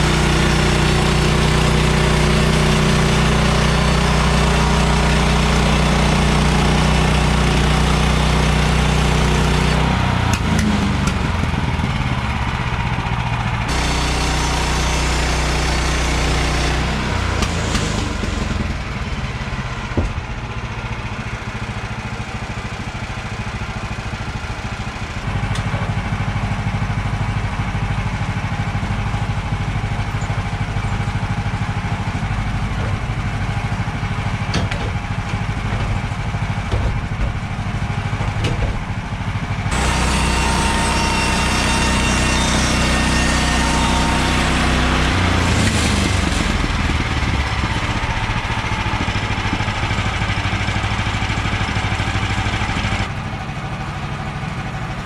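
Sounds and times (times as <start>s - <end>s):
gasoline engine running: 0.0s - 55.0s
band blade sawing through log: 13.7s - 18.8s, 39.7s - 50.2s.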